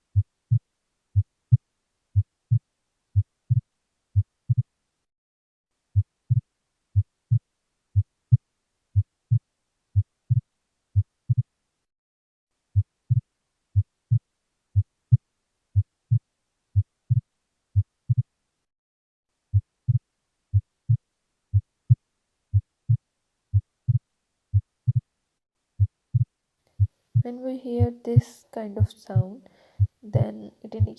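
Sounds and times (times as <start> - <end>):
heartbeat through stethoscope: 1.2 - 1.6, 2.2 - 2.6, 3.2 - 4.7, 6.0 - 7.4, 8.0 - 8.4, 9.0 - 9.4, 10.0 - 11.5, 12.8 - 14.2, 14.8 - 15.2, 15.8 - 16.2, 16.8 - 18.3, 19.5 - 25.1, 25.8 - 30.9.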